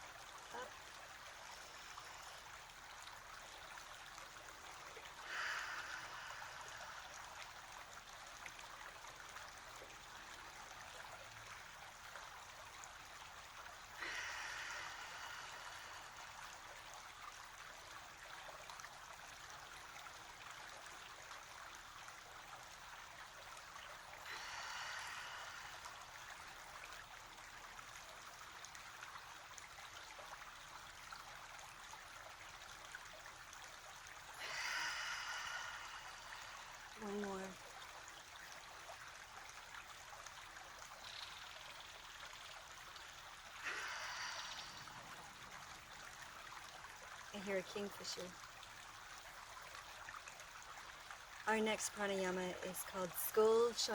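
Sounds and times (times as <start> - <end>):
stream flowing: 0.0 - 53.9
deep human breaths: 5.2 - 7.2, 14.0 - 16.3, 24.2 - 26.1, 34.4 - 36.8, 43.6 - 45.3.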